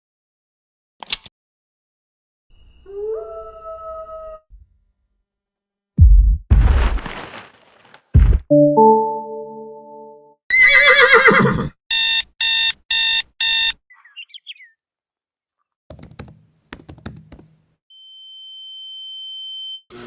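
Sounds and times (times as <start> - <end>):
horse whinnying: 10.5 - 11.8
birds chirping: 13.9 - 14.8
typing on a laptop keyboard: 15.9 - 17.6.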